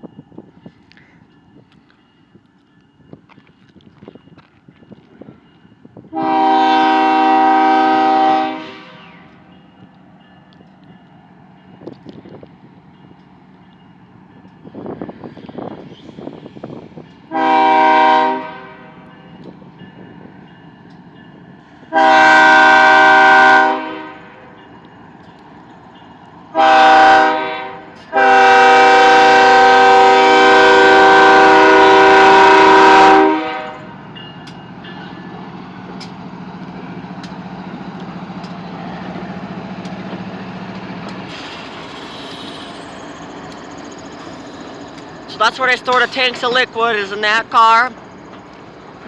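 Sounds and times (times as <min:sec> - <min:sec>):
train rumbling past: 0:00.0 - 0:49.0
locomotive air horn blasts: 0:06.1 - 0:09.3, 0:17.3 - 0:19.0, 0:21.9 - 0:24.6, 0:26.5 - 0:33.9.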